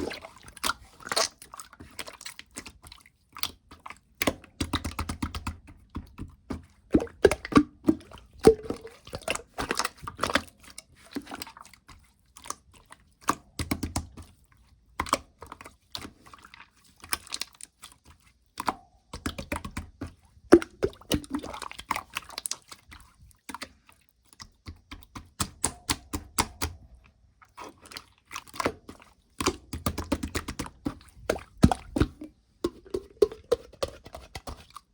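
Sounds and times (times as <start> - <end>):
hands squishing slime: 0.0 - 34.9.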